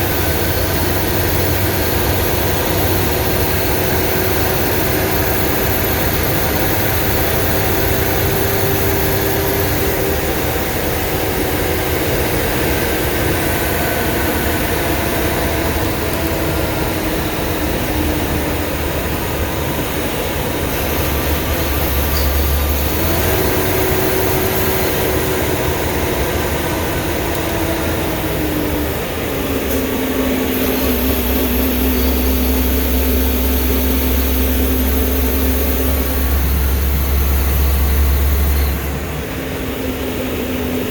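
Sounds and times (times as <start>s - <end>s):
bus engine and road rumble: 0.0s - 40.9s
whine falling in pitch: 20.4s - 40.8s.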